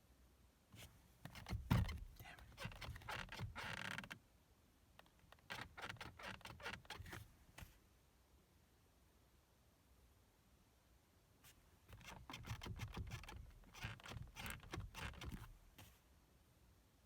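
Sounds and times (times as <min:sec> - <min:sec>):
parts clicking creaking and scraping: 0:11.9 - 0:15.5.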